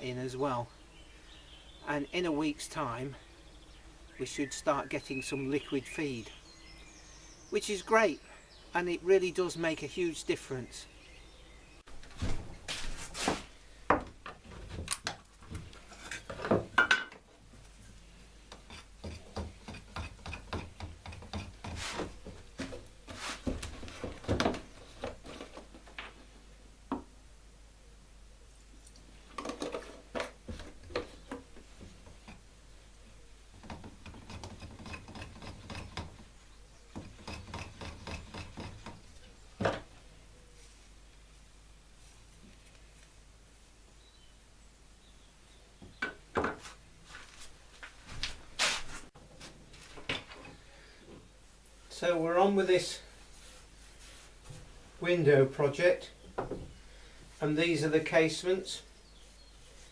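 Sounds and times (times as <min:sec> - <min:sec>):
objects knocking and scraping: 0:18.6 - 0:27.0, 0:29.3 - 0:32.4, 0:45.9 - 0:46.8.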